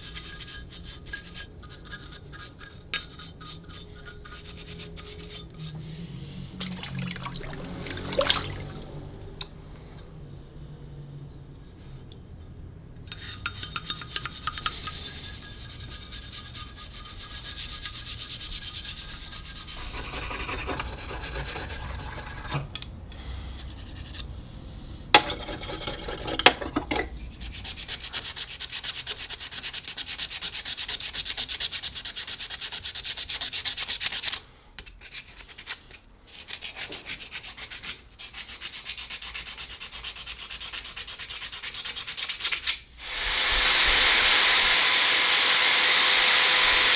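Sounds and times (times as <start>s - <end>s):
abrasive scrubbing on metal: 0.0s - 10.1s, 13.1s - 22.8s, 25.1s - 34.4s.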